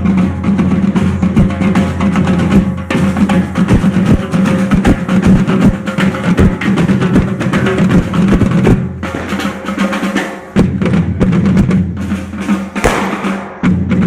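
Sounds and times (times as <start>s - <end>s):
bass drum strokes: 0.0s - 14.0s
snare drum rolls: 0.0s - 14.0s.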